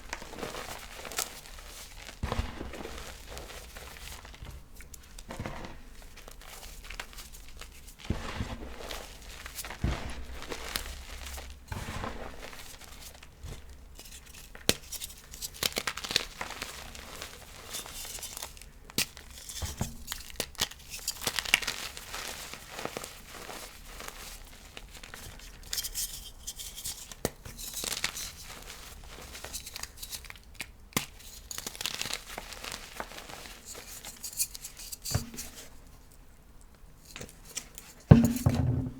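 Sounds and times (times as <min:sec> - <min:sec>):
chalk crunching and crumbling: 0:00.0 - 0:04.5.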